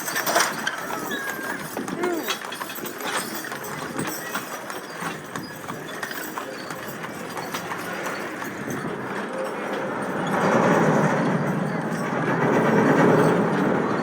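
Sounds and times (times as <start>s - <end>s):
horse hooves clip-clopping: 0.0s - 14.0s.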